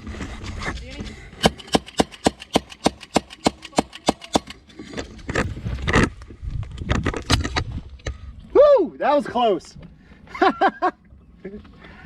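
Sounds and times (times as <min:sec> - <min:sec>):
airsoft gun shots: 0:01.4 - 0:04.6.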